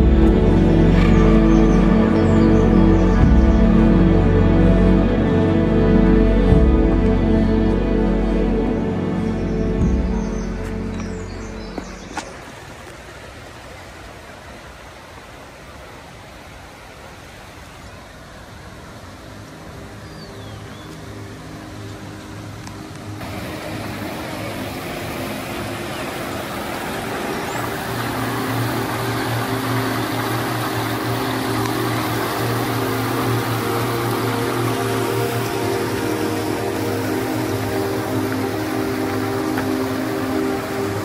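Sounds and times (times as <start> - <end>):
steady low tones: 0.0 - 12.1, 21.1 - 41.0
rush of falling water: 0.0 - 41.0.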